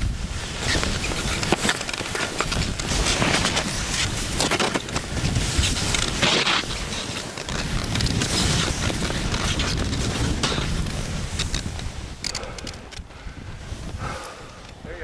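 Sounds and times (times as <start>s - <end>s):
skis hissing and scraping on snow: 0.0s - 12.6s, 13.2s - 15.0s.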